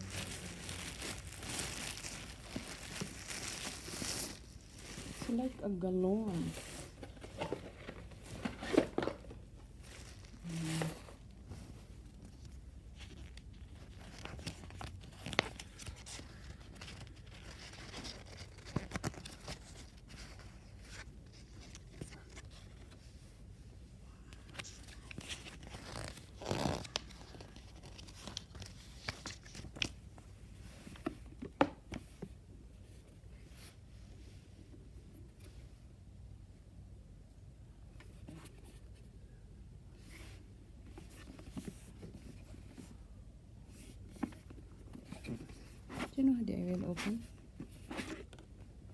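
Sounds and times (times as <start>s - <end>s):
packaging rustling and tearing: 0.0s - 5.4s, 24.9s - 30.0s.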